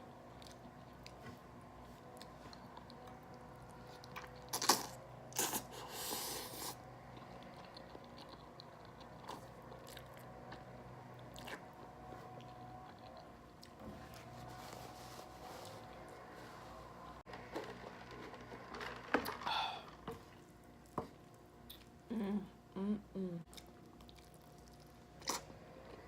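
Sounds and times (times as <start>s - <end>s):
person chewing pasta: 0.0s - 13.8s, 23.5s - 26.0s
faint steady hum: 0.0s - 26.0s.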